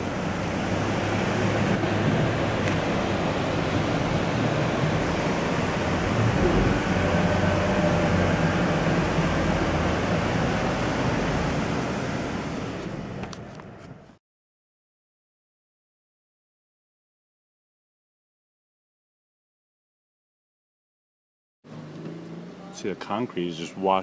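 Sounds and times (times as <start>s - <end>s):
steady rushing noise: 0.4s - 10.5s.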